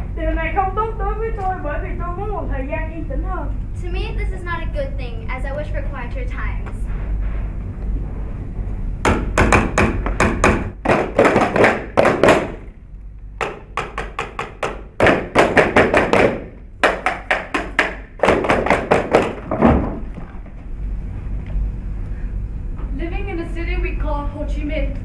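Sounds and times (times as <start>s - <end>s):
rhythmic percussion thumps and taps: 9.0s - 12.7s, 13.4s - 20.0s.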